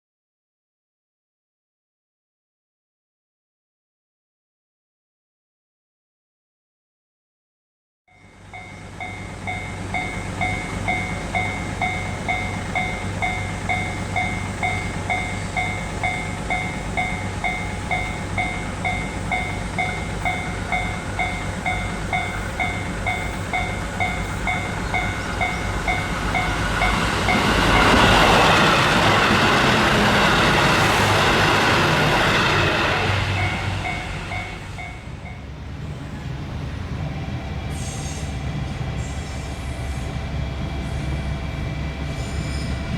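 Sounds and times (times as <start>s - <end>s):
diesel railcar passing: 8.1s - 42.9s
level crossing bell ringing: 33.3s - 35.5s.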